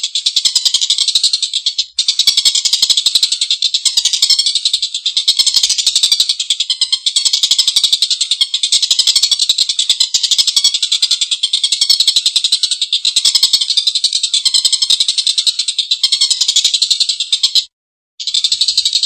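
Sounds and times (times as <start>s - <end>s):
kingfisher rattling cackle: 18.2s - 19.0s.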